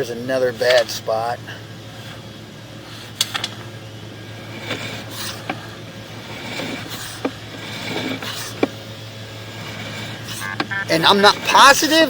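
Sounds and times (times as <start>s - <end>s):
steady low hum: 0.0s - 12.0s
cable rubbing and scraping: 4.2s - 12.0s.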